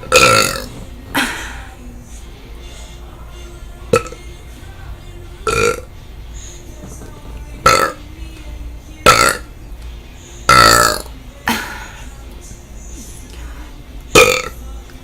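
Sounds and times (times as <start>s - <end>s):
woman burping: 0.0s - 1.8s, 3.9s - 4.2s, 5.4s - 5.9s, 7.6s - 8.1s, 9.0s - 9.5s, 10.5s - 12.0s, 14.1s - 14.6s.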